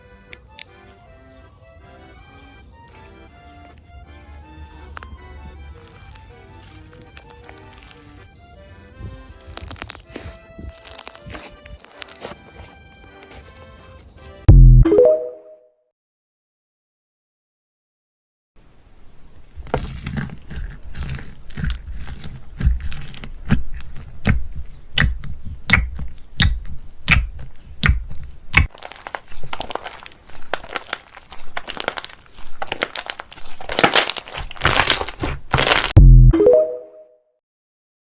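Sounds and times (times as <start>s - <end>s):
slime squeezed with crackling pops: 9.4s - 12.3s, 19.6s - 36.0s.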